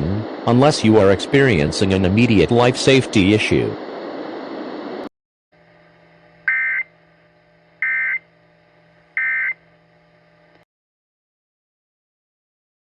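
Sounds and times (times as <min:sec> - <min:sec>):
steady hiss: 0:00.0 - 0:05.1
faint hum: 0:00.0 - 0:10.7
digital data tone bursts: 0:06.5 - 0:06.9, 0:07.8 - 0:08.2, 0:09.2 - 0:09.6.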